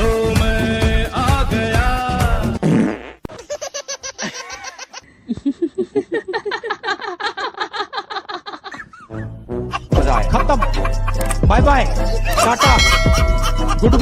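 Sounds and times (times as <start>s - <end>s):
music: 0.0s - 2.7s, 9.0s - 14.0s
person laughing high-pitched: 3.3s - 11.4s, 12.1s - 14.0s.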